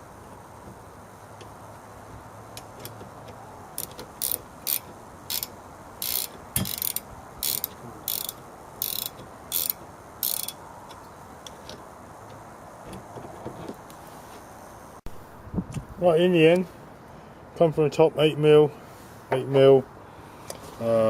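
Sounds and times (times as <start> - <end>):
ratchet wrench clicking: 3.8 - 10.6.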